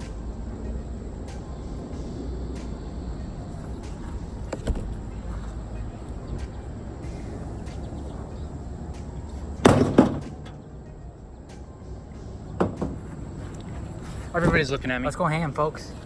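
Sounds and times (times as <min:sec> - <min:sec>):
microwave oven being smashed: 0:09.6 - 0:10.6.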